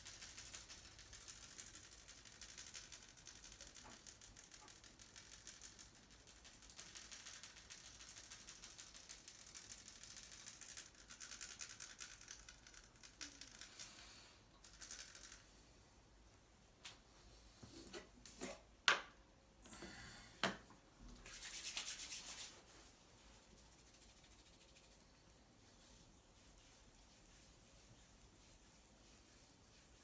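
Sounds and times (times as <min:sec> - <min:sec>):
hands scratching over skin: 0:21.2 - 0:30.0.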